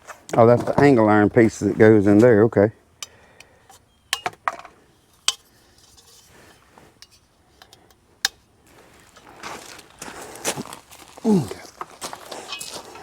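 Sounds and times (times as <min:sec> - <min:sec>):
metal parts clinking: 0:12.5 - 0:12.8.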